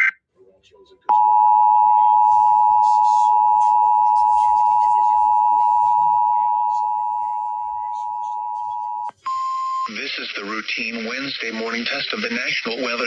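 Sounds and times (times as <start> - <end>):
two-tone alarm signal: 1.1 - 9.9.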